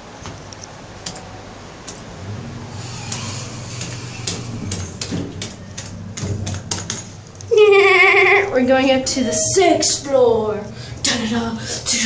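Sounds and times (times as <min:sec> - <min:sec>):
sharp clicks and knocks: 0:00.0 - 0:02.1, 0:02.8 - 0:07.5
elevator low hum: 0:00.0 - 0:12.0.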